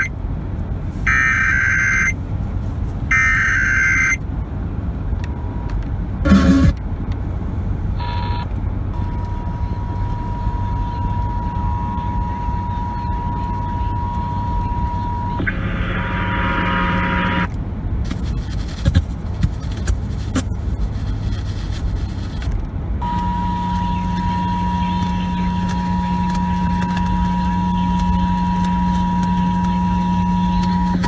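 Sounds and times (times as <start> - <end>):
low steady rumble: 0.0 - 31.0
radio hiss and clicks: 1.0 - 2.2, 3.1 - 4.2, 5.2 - 7.2, 8.0 - 31.0
harsh buzz: 1.1 - 2.2, 3.1 - 4.2, 6.2 - 6.8, 8.0 - 17.5, 23.0 - 31.0
steady high alert tone: 1.1 - 2.2, 3.1 - 4.2, 6.3 - 6.8, 9.7 - 17.5.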